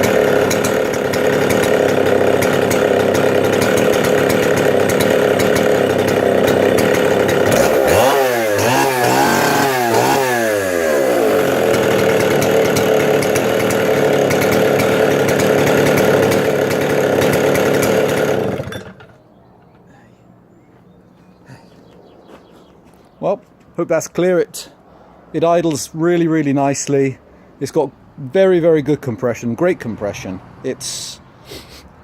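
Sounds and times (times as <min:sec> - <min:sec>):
chainsaw engine idling and revving: 0:00.0 - 0:19.3.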